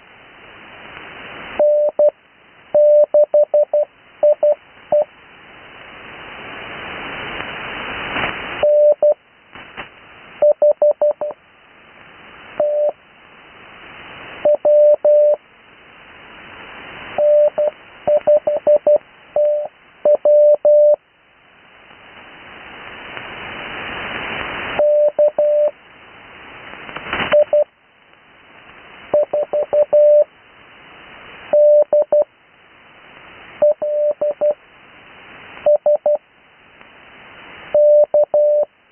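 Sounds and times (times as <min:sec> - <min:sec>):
morse code tone: 0:01.6 - 0:02.1, 0:02.8 - 0:05.1, 0:08.6 - 0:09.2, 0:12.6 - 0:13.0, 0:14.5 - 0:15.4, 0:17.2 - 0:21.0, 0:24.8 - 0:25.7, 0:29.2 - 0:30.3, 0:31.6 - 0:32.3, 0:33.6 - 0:34.6, 0:37.8 - 0:38.7
radio band hiss: 0:03.6 - 0:10.4, 0:21.6 - 0:38.4.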